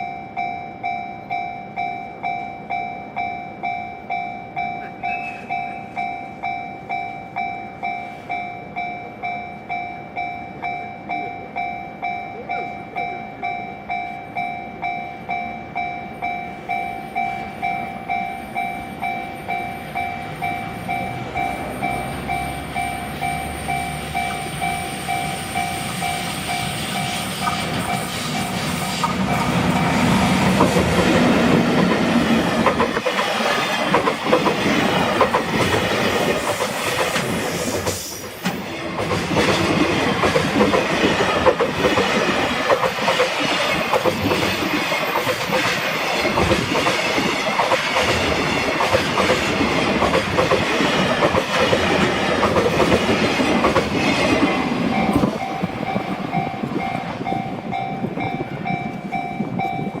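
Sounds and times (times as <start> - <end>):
crossing warning bell ringing: 0.0 - 60.0
train wheels clattering on rails: 14.8 - 60.0.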